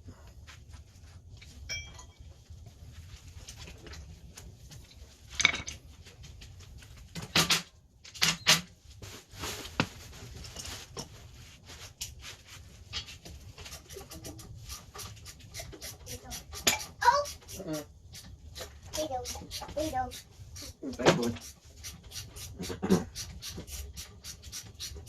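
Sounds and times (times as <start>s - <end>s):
metal tools clinking: 1.6s - 2.3s.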